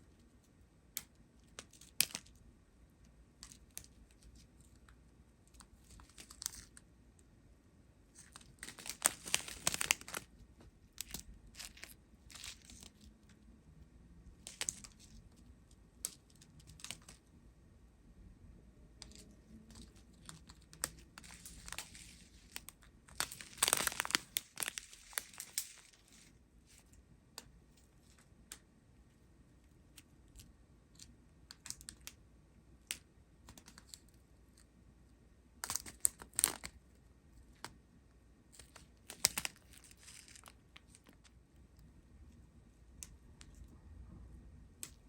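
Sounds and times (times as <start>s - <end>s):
plastic bags crinkling: 8.2s - 10.3s, 19.7s - 26.3s, 38.6s - 41.2s.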